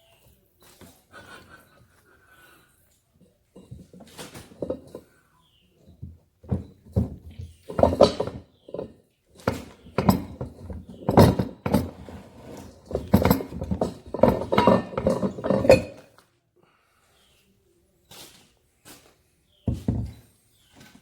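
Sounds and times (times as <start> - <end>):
metal clanking of hand tools: 3.6 - 5.1, 5.9 - 16.1.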